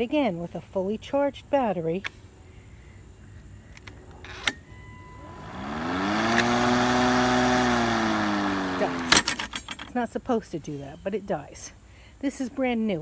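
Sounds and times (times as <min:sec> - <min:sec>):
electric lawn mower humming: 0:04.2 - 0:09.9
lawn mower switch click: 0:05.3 - 0:09.9.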